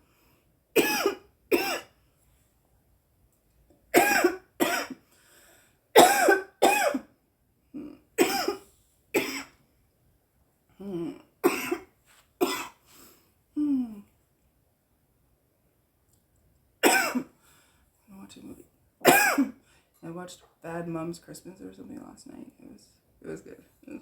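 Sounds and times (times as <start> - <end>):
woman coughing: 0.8 - 1.9, 4.0 - 5.0, 6.0 - 7.1, 8.2 - 8.6, 9.2 - 9.5, 11.4 - 12.8, 16.8 - 17.3, 19.0 - 19.6.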